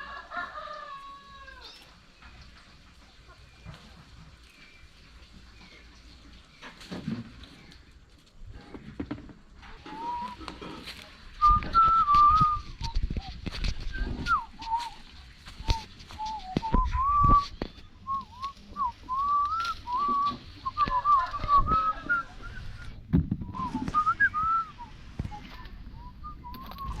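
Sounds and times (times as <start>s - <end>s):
person whistling a tune: 9.9s - 10.4s, 11.4s - 13.0s, 13.9s - 15.0s, 15.6s - 22.9s, 23.5s - 24.9s.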